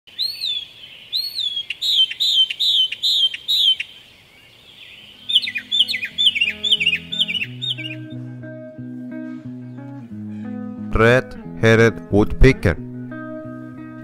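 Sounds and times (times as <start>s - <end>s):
bird calling: 0.1s - 10.8s
plucked guitar music: 5.4s - 14.0s.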